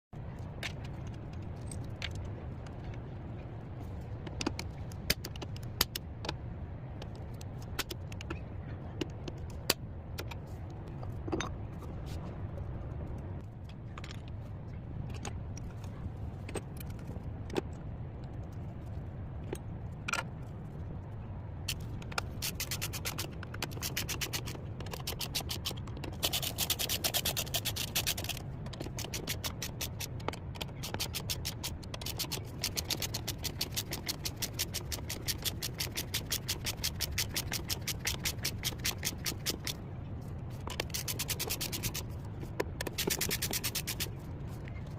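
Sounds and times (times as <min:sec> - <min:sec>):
steady low hum: 0:00.1 - 0:44.9
fast run of clicks: 0:21.7 - 0:39.8, 0:40.6 - 0:44.2.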